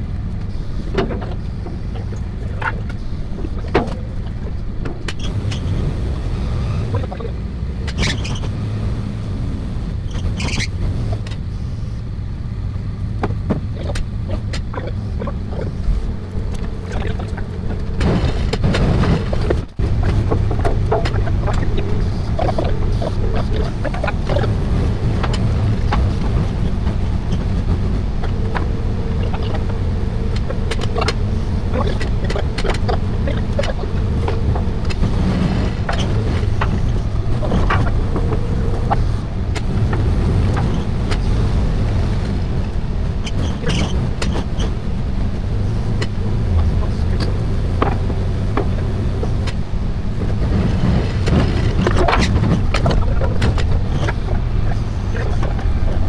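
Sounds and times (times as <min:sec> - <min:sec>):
engine running: 0:00.0 - 0:56.0
knocks and rattles: 0:15.6 - 0:27.8.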